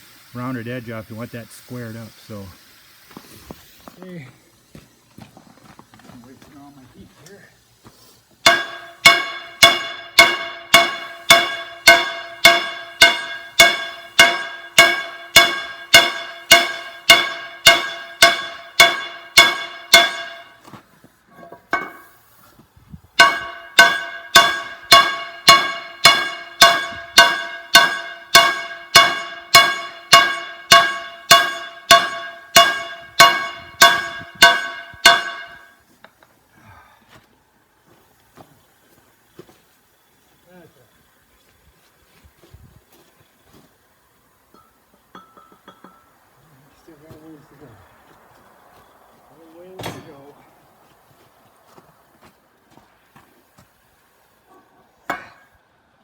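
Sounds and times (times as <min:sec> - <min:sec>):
hammer striking steel on anvil: 0:08.4 - 0:20.6, 0:21.3 - 0:22.2, 0:23.2 - 0:35.8, 0:49.8 - 0:50.4, 0:55.0 - 0:55.6.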